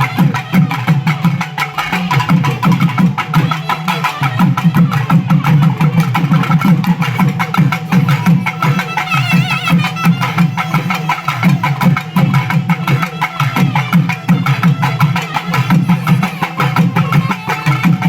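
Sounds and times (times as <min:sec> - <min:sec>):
fast dense drumming: 0:00.0 - 0:18.0
high wavering melody: 0:07.0 - 0:18.0.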